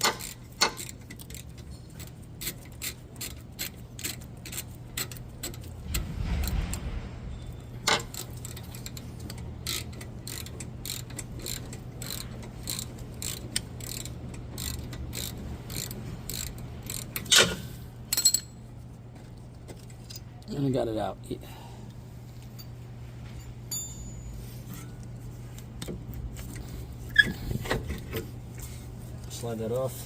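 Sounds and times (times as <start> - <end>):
hand ratchet clicking: 0.0 - 6.0, 7.9 - 18.4
loud metallic clank: 5.8 - 8.2.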